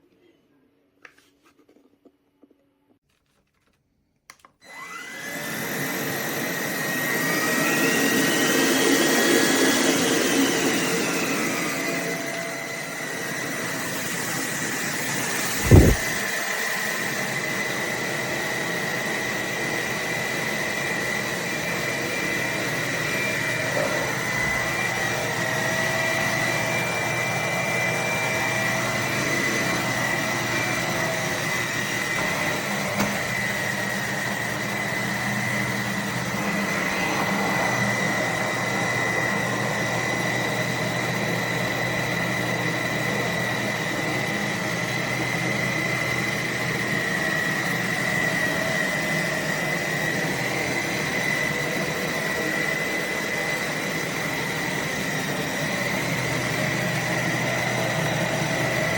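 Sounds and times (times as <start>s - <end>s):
vacuum cleaner motor whirring: 4.3s - 58.9s
low thump: 15.6s - 16.2s.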